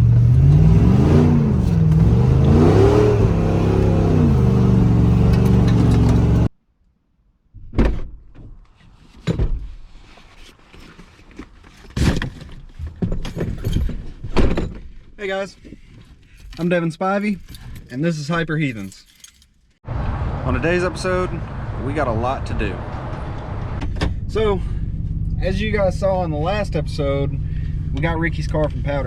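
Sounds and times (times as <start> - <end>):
pickup engine revving: 0.0 - 6.5.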